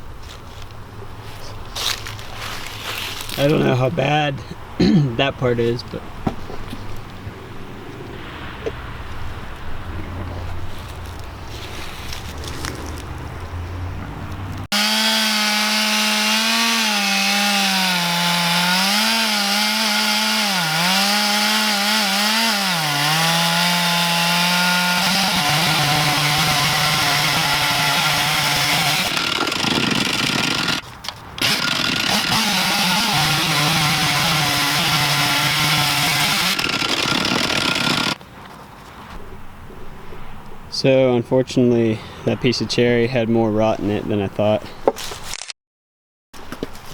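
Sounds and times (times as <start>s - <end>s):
chainsaw cutting log: 14.7s - 38.2s.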